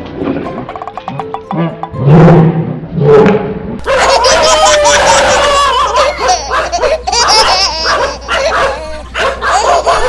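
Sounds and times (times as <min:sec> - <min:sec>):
dog barking and yipping: 0:03.8 - 0:10.0
people laughing: 0:03.8 - 0:10.0.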